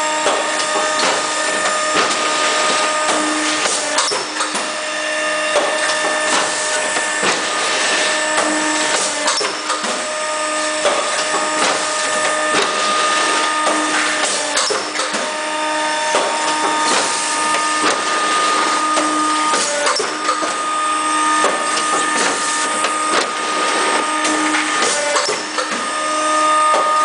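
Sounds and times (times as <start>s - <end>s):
machine motor hum: 0.0s - 27.0s.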